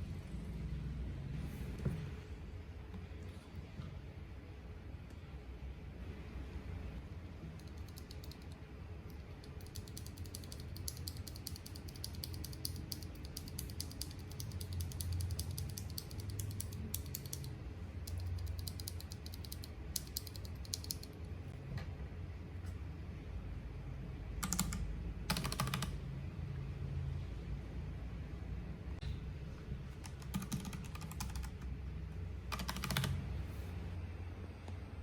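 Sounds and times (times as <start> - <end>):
low steady hum: 0.0 - 35.0
mechanical keyboard key clicks: 9.4 - 17.5.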